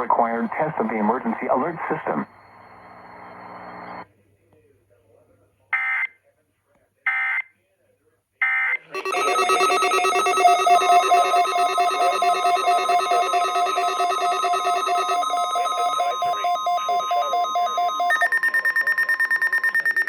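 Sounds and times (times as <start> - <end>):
rapidly pulsing alarm tones: 9.0 - 20.0.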